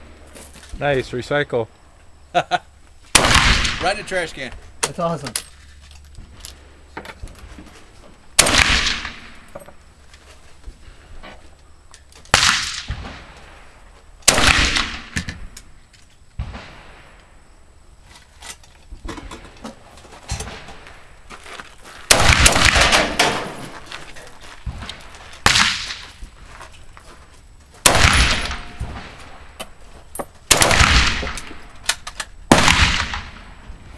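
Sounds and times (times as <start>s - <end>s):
rifle shots echoing: 3.1s - 4.1s, 8.4s - 9.5s, 12.3s - 13.4s, 14.2s - 15.3s, 22.1s - 23.7s, 25.4s - 26.2s, 27.8s - 29.5s, 30.5s - 31.7s, 32.5s - 33.6s.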